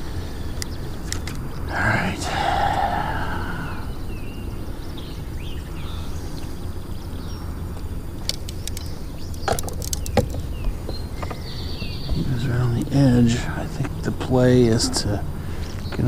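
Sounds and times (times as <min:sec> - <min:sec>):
sharp clicks: 0:08.2 - 0:10.6.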